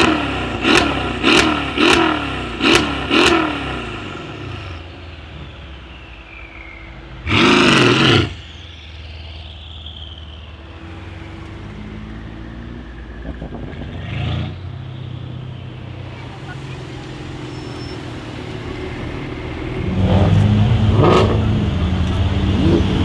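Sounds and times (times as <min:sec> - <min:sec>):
car engine revving: 0:00.0 - 0:23.0
turbo whistle: 0:14.8 - 0:19.2.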